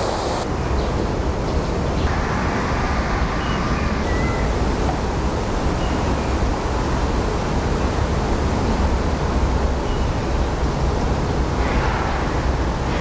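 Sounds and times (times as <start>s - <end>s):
waterfall rushing: 0.0s - 0.4s.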